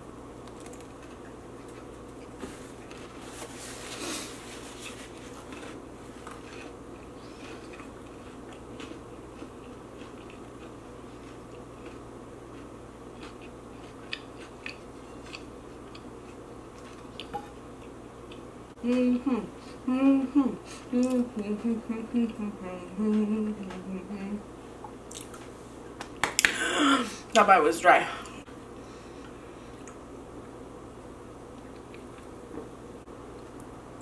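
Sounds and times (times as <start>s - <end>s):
low hum: 0.0s - 27.3s
chewing crunchy food: 4.5s - 18.5s, 25.0s - 25.5s.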